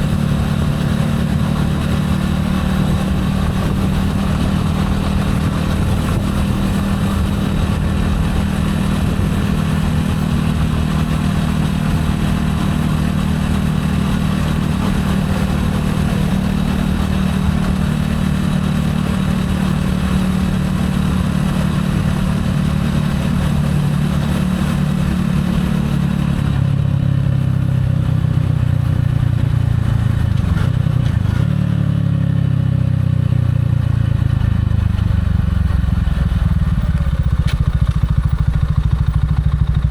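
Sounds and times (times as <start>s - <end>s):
wind noise on microphone: 0.0s - 27.7s
motorcycle engine running: 0.0s - 39.9s.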